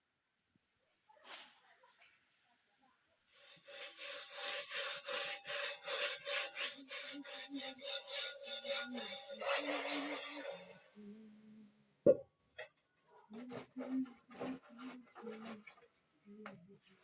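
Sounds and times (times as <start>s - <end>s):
rhythmic rubbing strokes: 3.3s - 11.2s, 13.4s - 15.8s.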